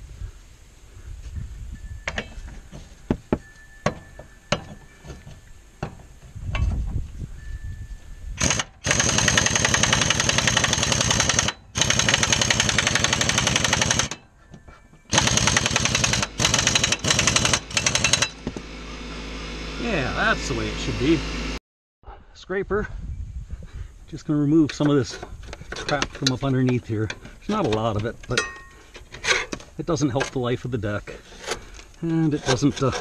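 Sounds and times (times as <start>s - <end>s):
pneumatic impact wrench hammering: 8.4s - 14.2s, 15.1s - 18.8s
sharp clicks and knocks: 24.6s - 30.4s.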